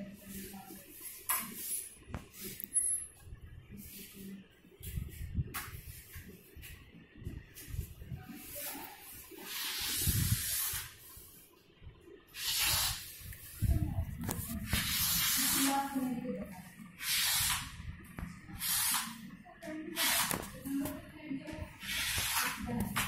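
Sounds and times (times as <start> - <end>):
bursts of hissing: 12.4 - 13.2.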